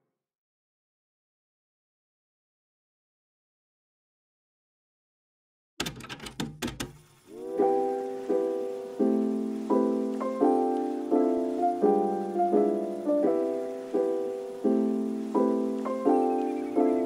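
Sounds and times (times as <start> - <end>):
soft piano chords: 7.3 - 17.0.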